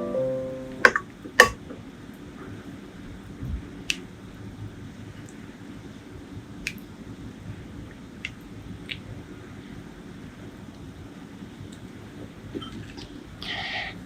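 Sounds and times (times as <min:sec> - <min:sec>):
piano music: 0:00.0 - 0:01.5.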